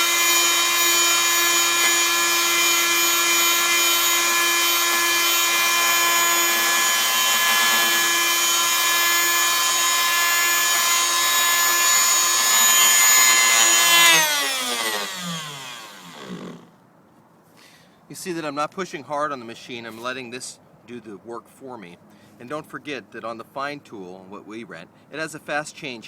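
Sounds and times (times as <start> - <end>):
oscillating tool sanding: 0.0 - 16.6
motor winding down: 0.0 - 16.7.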